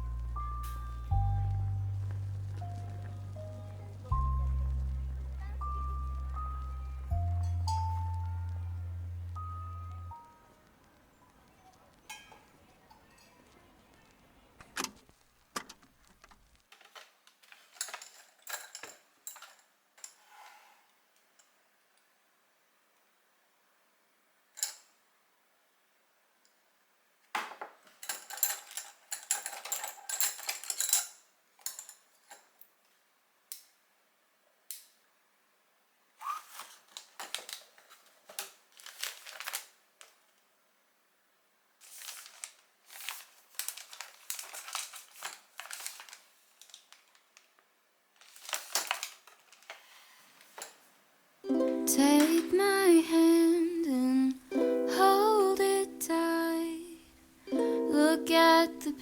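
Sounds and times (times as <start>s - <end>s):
ukulele music: 0.0s - 10.3s, 51.4s - 59.0s
kitchenware clicking and clattering: 12.0s - 13.7s, 15.6s - 20.3s, 27.4s - 32.6s.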